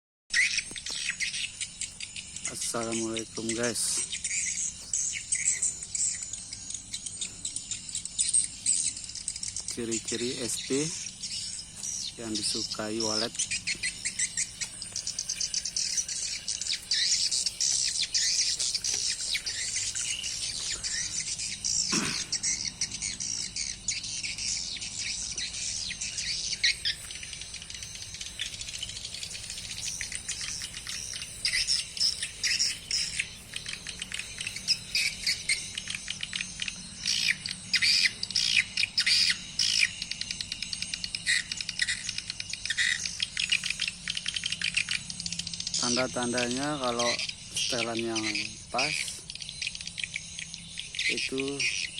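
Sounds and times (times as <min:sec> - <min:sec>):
swiftlets chirping and twittering: 0:00.3 - 0:51.9.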